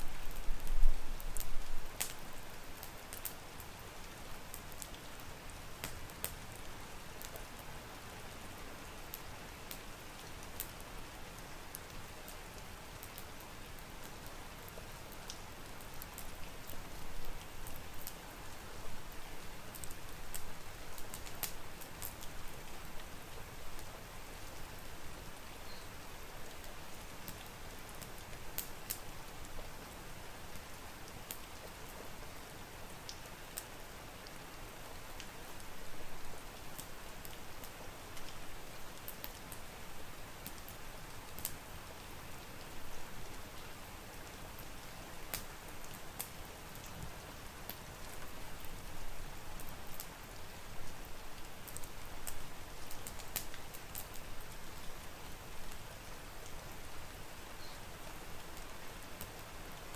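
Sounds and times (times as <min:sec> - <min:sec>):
steady rain: 0:00.0 - 0:59.9
wood fire crackling: 0:00.0 - 0:59.9.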